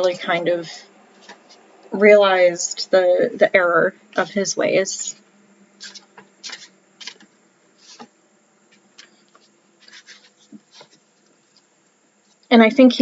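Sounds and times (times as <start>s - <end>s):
cards rustling and sliding: 5.8s - 8.1s, 8.7s - 11.0s.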